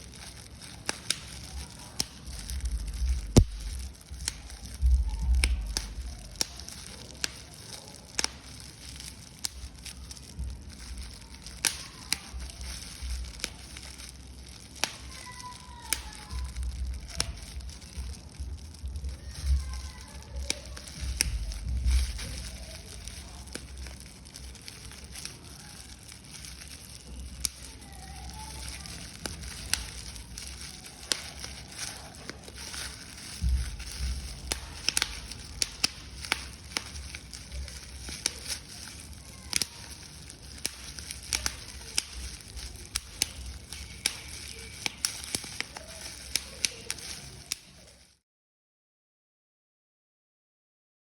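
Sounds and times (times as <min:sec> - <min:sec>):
paper being crumpled: 0:00.0 - 0:48.2.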